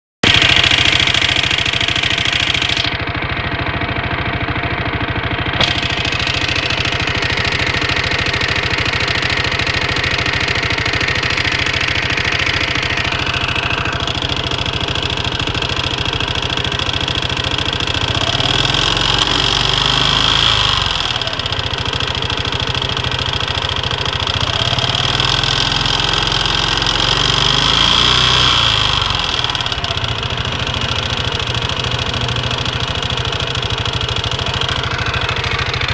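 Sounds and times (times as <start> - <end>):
scooter engine running: 0.2 - 35.9.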